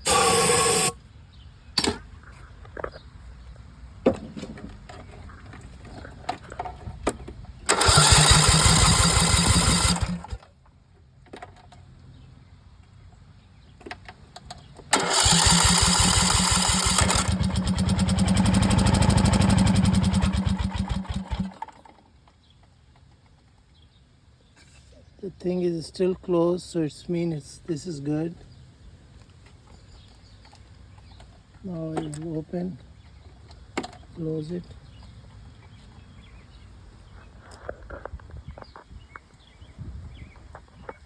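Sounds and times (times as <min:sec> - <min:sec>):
mower engine starter cranking: 0:00.0 - 0:01.0, 0:07.7 - 0:10.5, 0:14.9 - 0:22.0.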